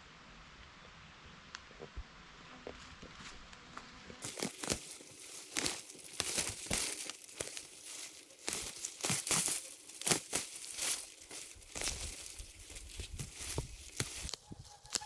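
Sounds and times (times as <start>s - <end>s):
dry leaves rustling and crackling: 4.2s - 15.0s.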